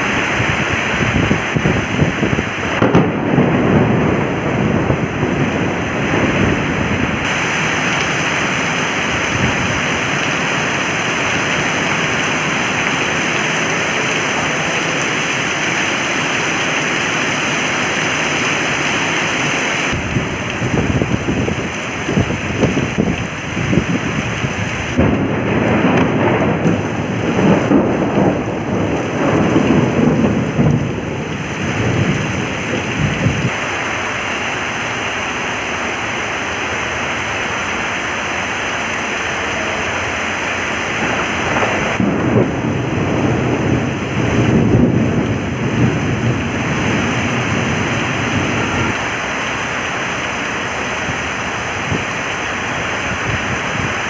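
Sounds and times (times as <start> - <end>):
heavy rain falling: 0.0 - 54.0
low rumbling: 19.9 - 52.3.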